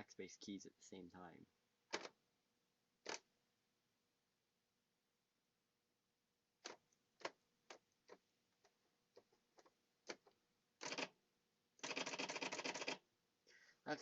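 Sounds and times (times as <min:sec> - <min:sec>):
typewriter printing clicks: 0:10.8 - 0:11.1, 0:11.8 - 0:13.0.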